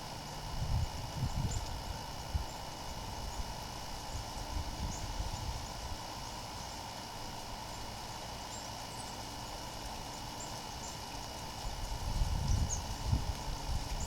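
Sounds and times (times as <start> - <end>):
steady background hiss: 0.0 - 14.0
faint bird chirps: 8.5 - 9.3, 10.0 - 13.0.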